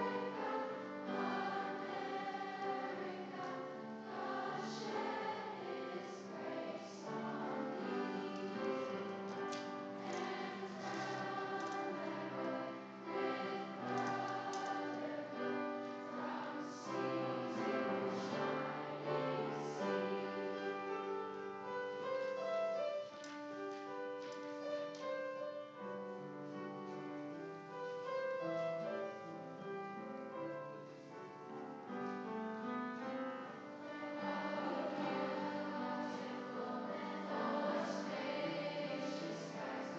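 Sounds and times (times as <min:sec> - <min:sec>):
school chorus singing: 0:00.0 - 0:22.3, 0:32.6 - 0:39.9
piano accompaniment: 0:00.0 - 0:39.9.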